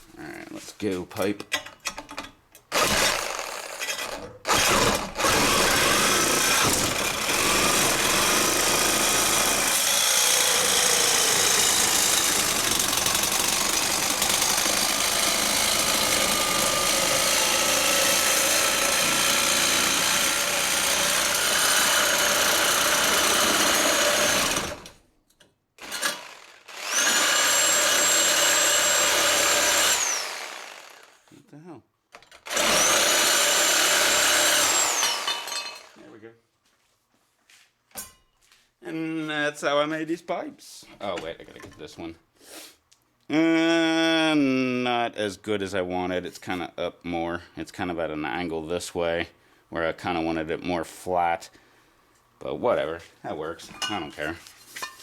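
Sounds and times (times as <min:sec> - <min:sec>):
power cutter slicing pipe: 0:02.7 - 0:25.0, 0:25.8 - 0:31.2, 0:32.4 - 0:36.0.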